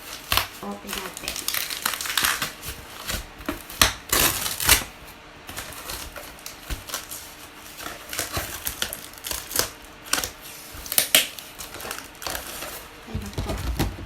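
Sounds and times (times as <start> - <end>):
packing tape scraped and torn: 0.0 - 12.9
cardboard rustling and knocking: 11.8 - 14.0.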